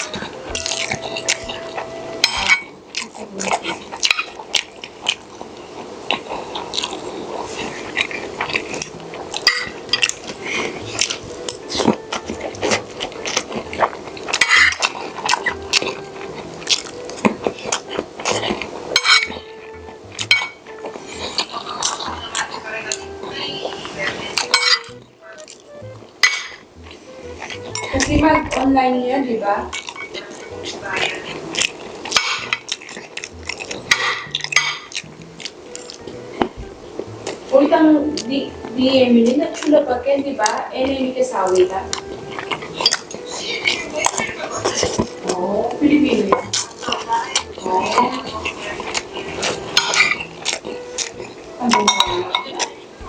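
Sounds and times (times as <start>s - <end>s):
cutlery clinking on a plate: 0.0s - 2.8s, 8.0s - 23.0s, 24.3s - 25.1s, 26.2s - 26.6s, 29.7s - 35.0s, 46.3s - 52.8s.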